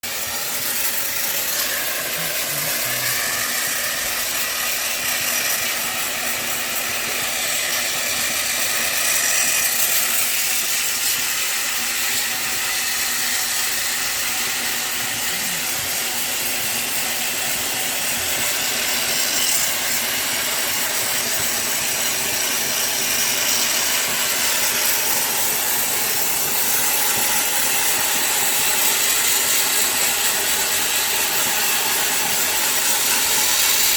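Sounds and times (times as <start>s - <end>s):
hissing spray: 0.1s - 12.4s.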